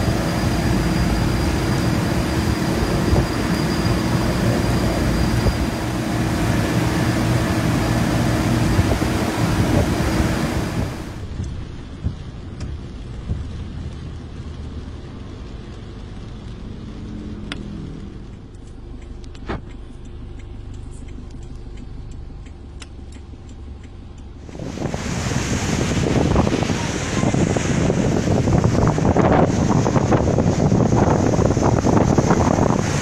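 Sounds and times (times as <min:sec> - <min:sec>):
wind buffeting microphone: 0:00.0 - 0:14.2, 0:24.4 - 0:33.0
motor vehicle rumbling: 0:00.0 - 0:33.0
faint clicks: 0:17.5 - 0:24.3.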